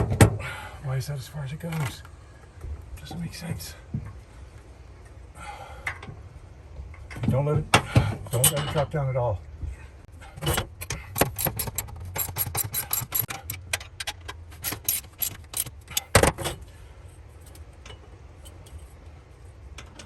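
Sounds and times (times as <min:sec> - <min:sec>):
ratcheting socket wrench clicking: 0:10.4 - 0:16.2.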